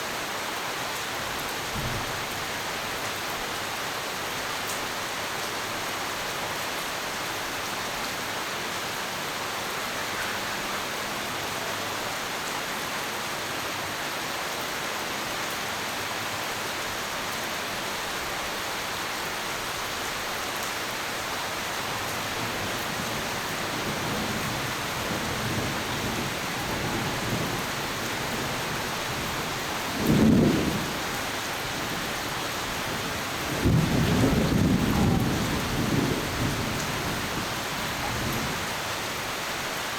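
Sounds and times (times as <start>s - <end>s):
heavy rain falling: 0.0s - 39.9s
thunder rumbling: 22.4s - 38.8s
loud thunderclap: 30.0s - 31.0s, 33.5s - 37.4s.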